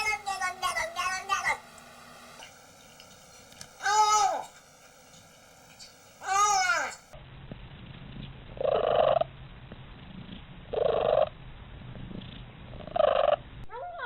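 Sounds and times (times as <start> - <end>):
cat purring: 7.8 - 14.0.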